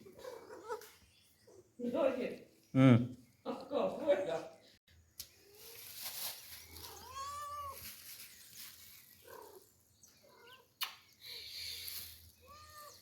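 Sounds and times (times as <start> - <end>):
cat meowing: 6.9 - 7.9, 12.4 - 13.0.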